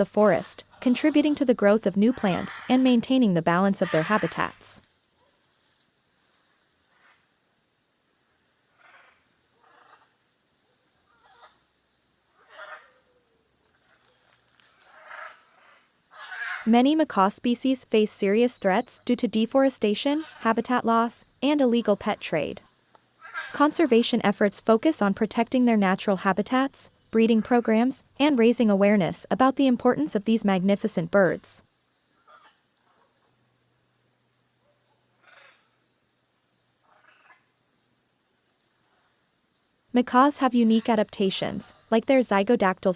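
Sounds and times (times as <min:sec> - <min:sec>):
harsh rasping bird calls: 0:00.0 - 0:04.8, 0:12.4 - 0:13.0, 0:13.8 - 0:31.5
macaws squawking: 0:00.0 - 0:04.8, 0:16.2 - 0:22.6, 0:23.2 - 0:31.6.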